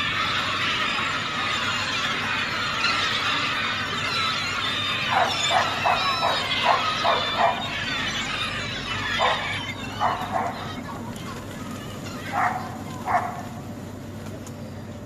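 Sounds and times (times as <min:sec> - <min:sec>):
gulls calling: 0:00.0 - 0:15.0.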